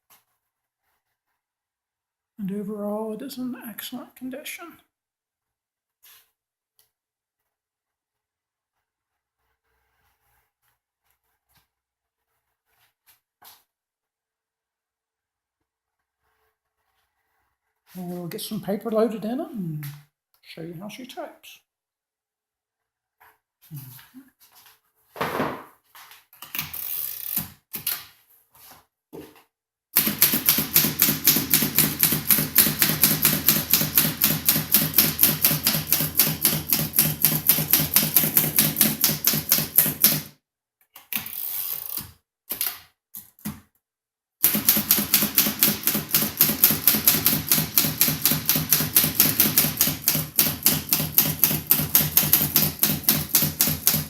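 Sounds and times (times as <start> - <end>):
typewriter typing: 30.0 - 40.3, 44.4 - 54.0.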